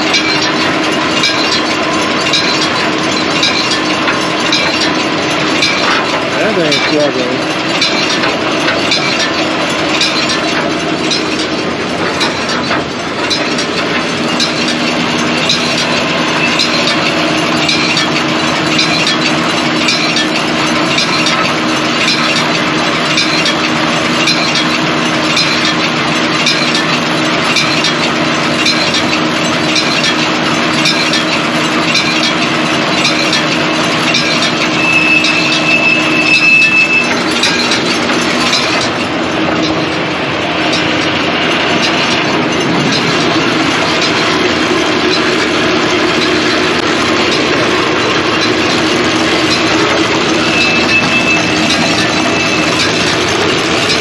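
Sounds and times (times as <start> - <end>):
baler running with clicking: 0.0 - 54.0
high squeal: 34.8 - 37.2, 50.3 - 52.9.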